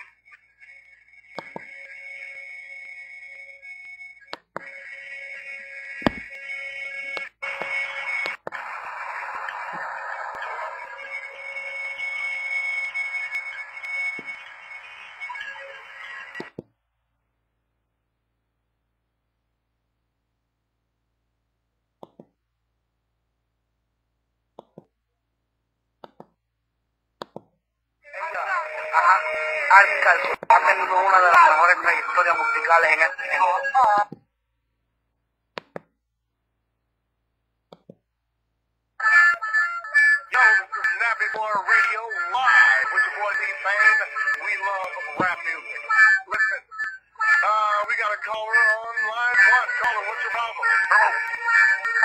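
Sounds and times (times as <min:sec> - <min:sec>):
ringtone music: 0:00.0 - 0:16.5, 0:28.1 - 0:33.6, 0:39.0 - 0:52.0.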